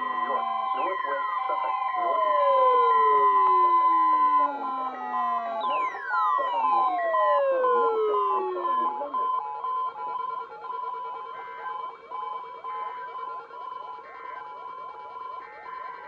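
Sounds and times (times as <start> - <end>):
long falling alert tone: 4.3 - 9.0.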